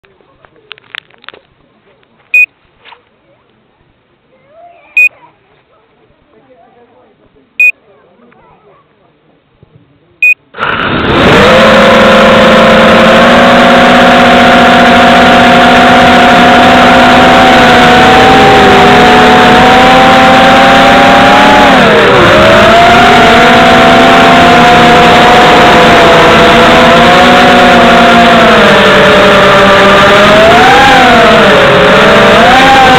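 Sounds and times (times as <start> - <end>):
short beep: 2.3 - 2.6, 10.2 - 10.4
drone motors whining: 11.1 - 32.9.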